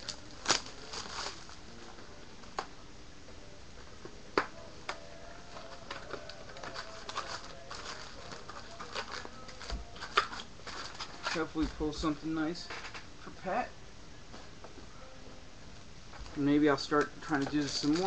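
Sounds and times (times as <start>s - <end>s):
foil wrappers crinkling: 0.0s - 2.0s, 5.4s - 13.0s, 16.2s - 18.0s.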